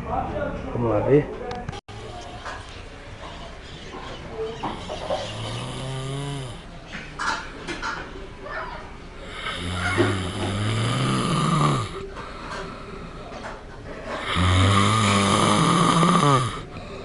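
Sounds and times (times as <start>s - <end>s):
man snoring loudly: 4.8s - 6.6s, 9.2s - 12.0s, 14.2s - 16.7s.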